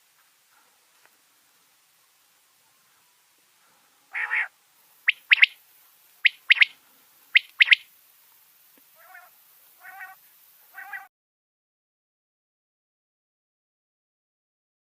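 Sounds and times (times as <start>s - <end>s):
quail calling: 4.1s - 5.6s, 6.2s - 7.9s, 9.0s - 11.1s.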